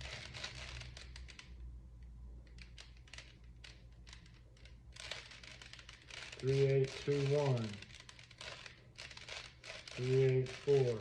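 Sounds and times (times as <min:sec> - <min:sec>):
puzzle cube plastic clicks: 0:02.4 - 0:10.7.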